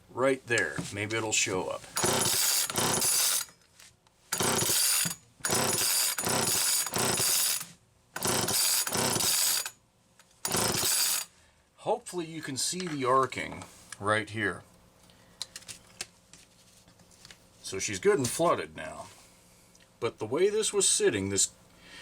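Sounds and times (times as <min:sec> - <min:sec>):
chainsaw pull starter cranking: 0:01.9 - 0:03.5, 0:04.3 - 0:09.8, 0:10.4 - 0:11.3.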